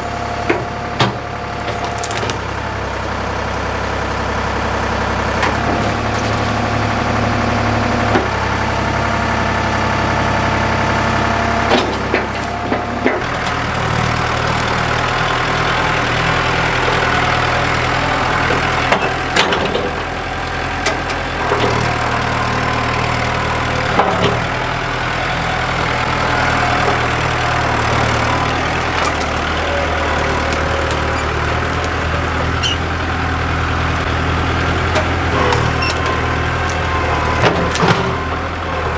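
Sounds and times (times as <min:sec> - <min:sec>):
tractor engine running: 0:00.0 - 0:38.9.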